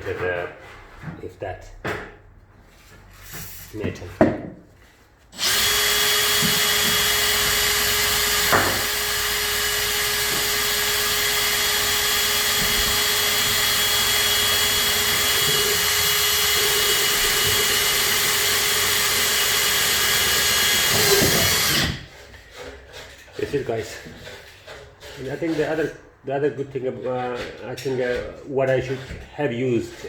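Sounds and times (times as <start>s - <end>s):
electric drill boring sheet metal: 5.4s - 22.1s.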